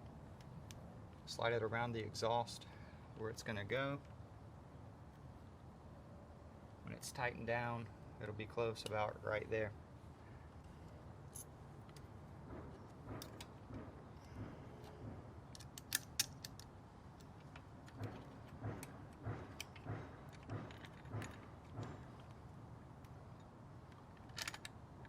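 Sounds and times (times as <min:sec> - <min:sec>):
metal clinks and knocks: 0:17.3 - 0:22.4.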